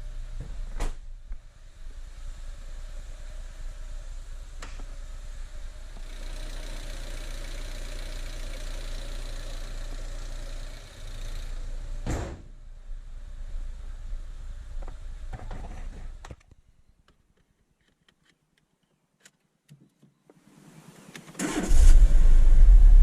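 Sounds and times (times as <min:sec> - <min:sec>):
loud thump: 0:12.0 - 0:12.5.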